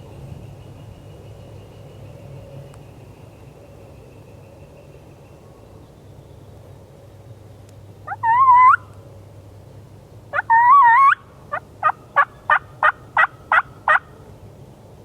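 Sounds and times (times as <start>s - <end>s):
turkey calling: 8.1s - 8.8s, 10.3s - 14.0s
turkey yelps: 8.1s - 8.9s, 10.3s - 14.0s.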